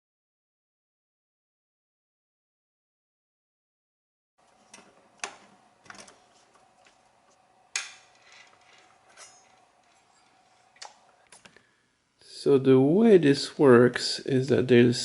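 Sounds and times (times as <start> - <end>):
faint steady hum: 4.4 - 15.0.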